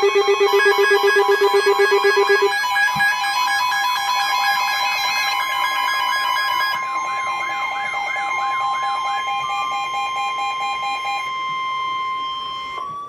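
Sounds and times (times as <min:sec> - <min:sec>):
warbling tone: 0:00.0 - 0:02.5
steady electronic alert tones: 0:00.0 - 0:02.6.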